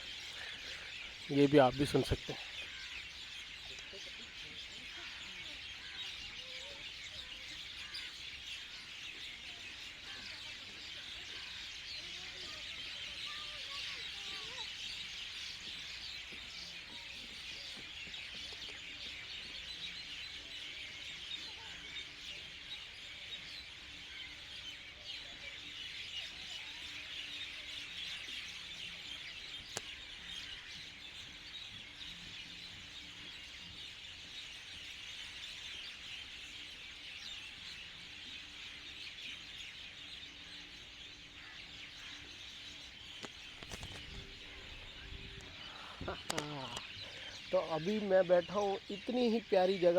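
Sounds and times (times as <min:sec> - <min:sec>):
small birds chirping chorus: 0:00.0 - 0:49.9.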